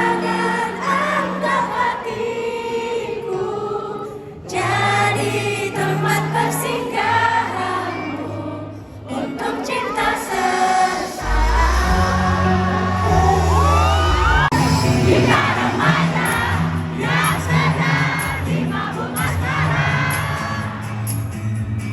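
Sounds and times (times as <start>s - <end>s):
voices singing: 0.0s - 21.2s
heavy bass line: 11.2s - 16.0s
sustained bass notes: 11.2s - 17.8s.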